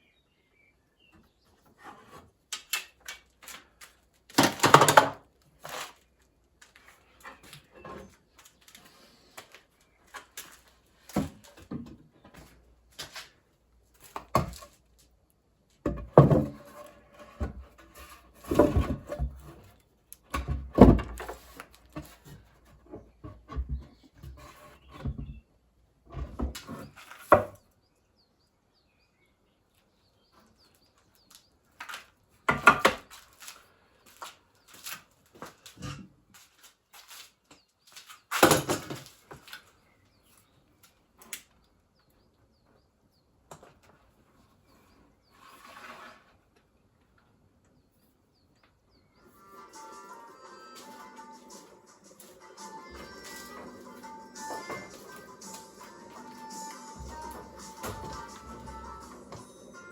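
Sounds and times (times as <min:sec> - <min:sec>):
wooden boards knocking: 0:15.9 - 0:16.8, 0:20.4 - 0:21.4, 0:54.5 - 0:59.5.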